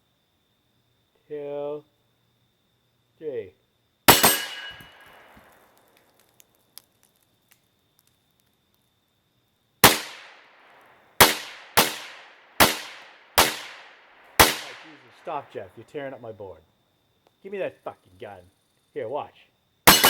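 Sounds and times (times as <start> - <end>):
gunshots: 4.1 - 5.4, 9.8 - 15.5.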